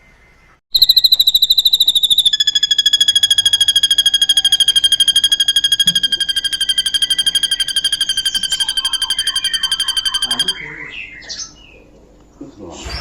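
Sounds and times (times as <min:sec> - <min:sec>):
bird singing fast high trill: 0:00.7 - 0:11.0.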